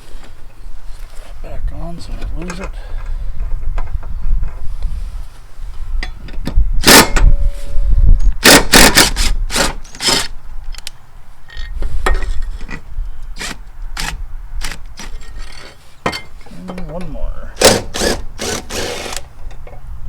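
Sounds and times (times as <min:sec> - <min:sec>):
metal tools clanking: 0:15.1 - 0:17.1.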